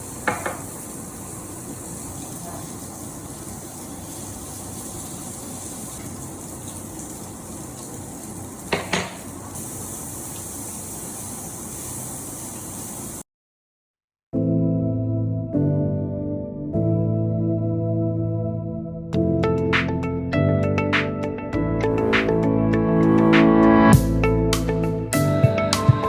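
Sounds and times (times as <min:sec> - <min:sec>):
running water hiss: 0:00.0 - 0:13.2.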